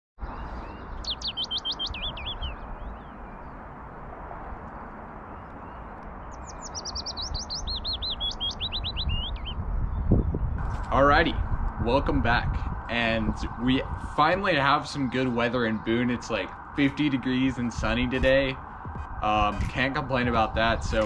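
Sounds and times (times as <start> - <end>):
songbird singing: 0.2 - 10.6, 12.8 - 21.0
low rumble: 9.4 - 21.0.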